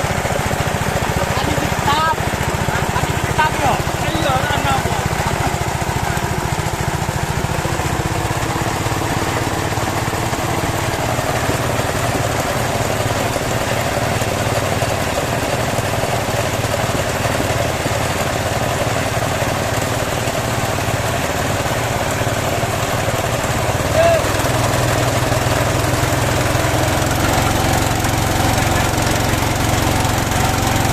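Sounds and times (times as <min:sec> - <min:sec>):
small water-pump engine running: 0:00.0 - 0:30.9.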